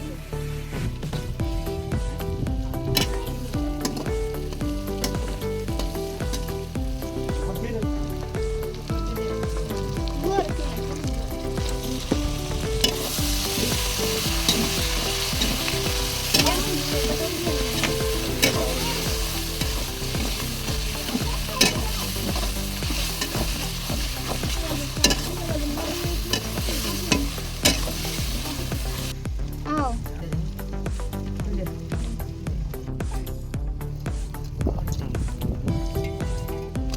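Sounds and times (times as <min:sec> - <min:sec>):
food sizzling in a hot pan: 0:01.6 - 0:29.6
spatula scraping a pan: 0:12.8 - 0:29.1.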